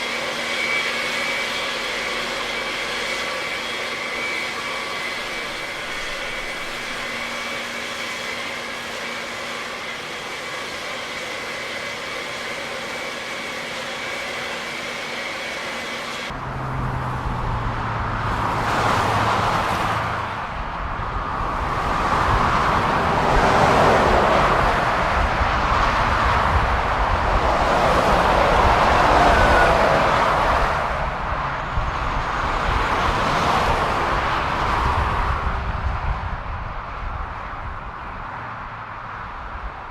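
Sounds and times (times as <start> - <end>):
vehicle running noise: 15.0 - 39.9
rough vehicle noise: 16.3 - 35.8.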